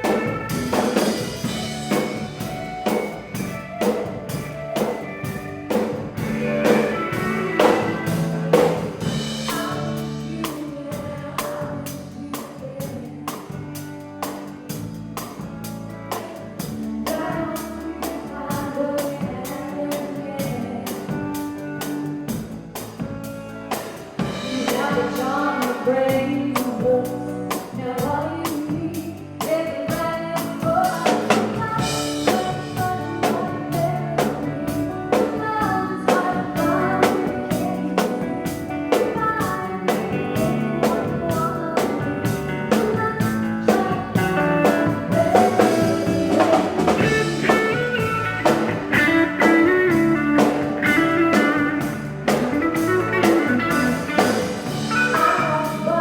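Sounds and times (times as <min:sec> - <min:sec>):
person singing: 0:00.0 - 0:13.8, 0:24.2 - 0:56.0
drum kit: 0:00.0 - 0:56.0
electric guitar: 0:00.0 - 0:56.0.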